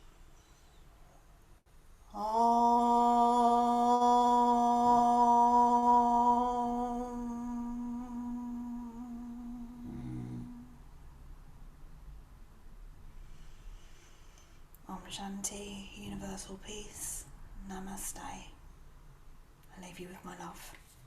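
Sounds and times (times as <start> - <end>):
woman chanting om: 2.0 - 10.8, 14.9 - 18.6.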